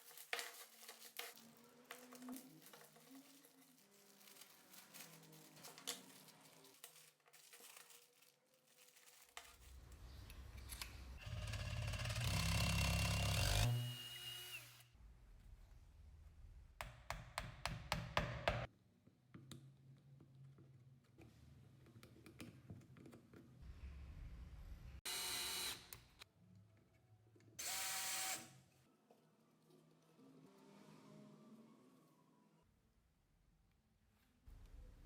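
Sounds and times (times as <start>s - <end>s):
power tool whining: 11.2s - 14.9s, 25.1s - 26.1s.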